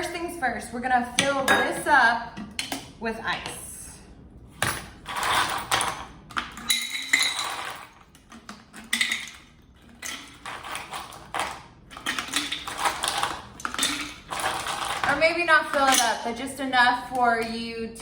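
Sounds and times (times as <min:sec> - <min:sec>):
ice cubes clinking into glass: 0:06.6 - 0:08.0, 0:08.8 - 0:15.2.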